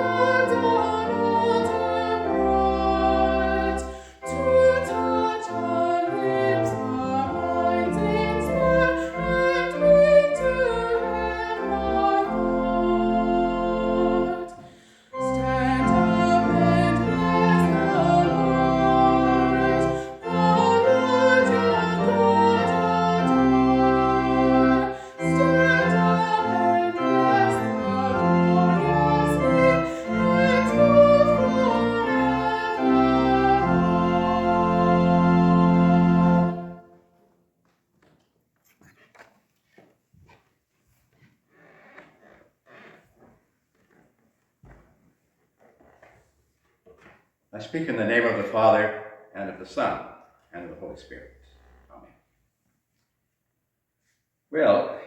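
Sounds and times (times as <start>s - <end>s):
sacred choral music with instruments: 0.0s - 37.0s.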